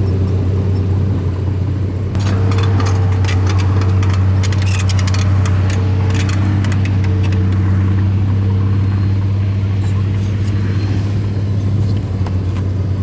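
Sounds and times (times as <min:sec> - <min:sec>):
toy bulldozer humming: 0:00.0 - 0:13.0
clicks and rattles: 0:02.1 - 0:08.0.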